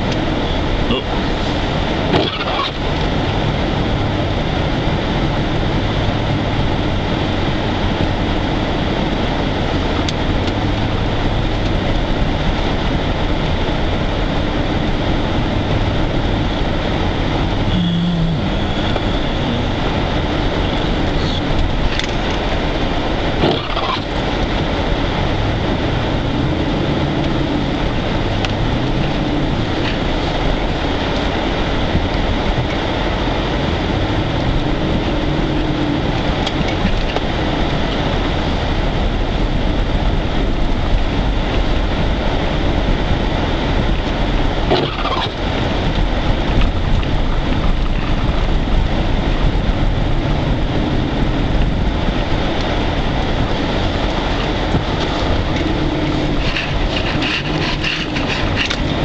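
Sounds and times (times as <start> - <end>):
tyres pushing through snow: 0.0 - 59.0
vehicle engine rumble: 0.0 - 59.0.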